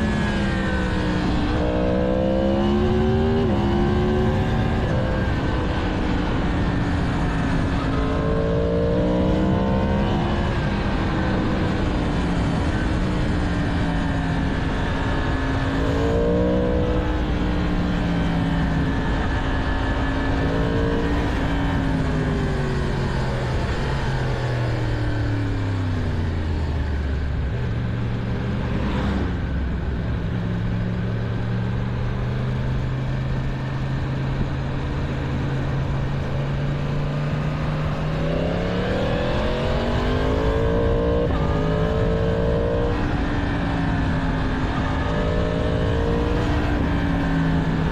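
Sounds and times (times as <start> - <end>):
motorcycle engine revving: 0.0 - 47.9
wind and road noise: 0.0 - 47.9.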